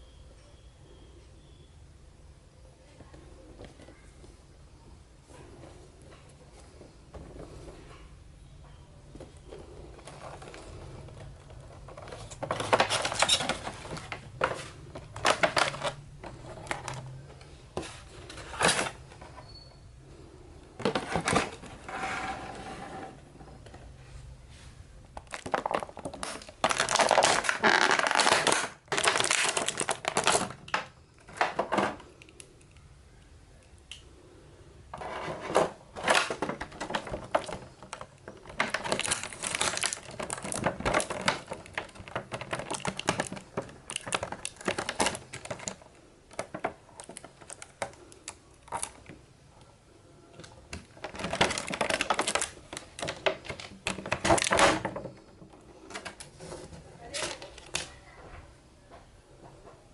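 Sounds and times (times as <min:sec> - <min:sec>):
plastic and cardboard crinkling: 0:09.0 - 0:32.2, 0:34.9 - 0:58.2.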